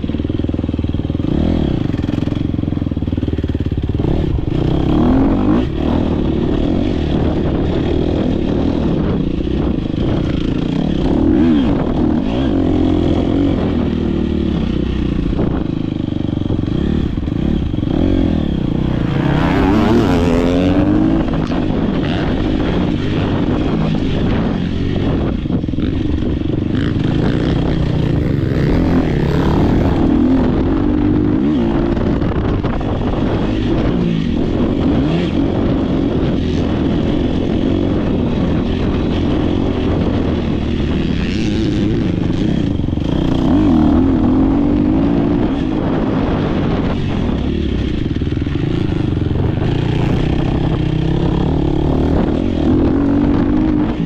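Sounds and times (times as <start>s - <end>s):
dirt bike engine revving: 0.0s - 54.0s.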